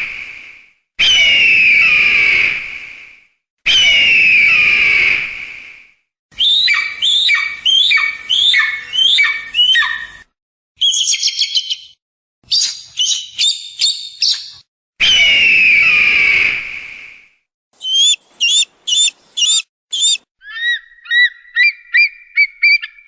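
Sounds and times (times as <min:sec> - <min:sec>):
eagle scream: 0:01.0 - 0:02.6, 0:03.7 - 0:05.3, 0:06.4 - 0:10.2, 0:15.0 - 0:16.6, 0:17.8 - 0:22.9
eagle calls: 0:06.4 - 0:10.2, 0:17.8 - 0:23.0
eagle chattering notes: 0:17.8 - 0:20.2.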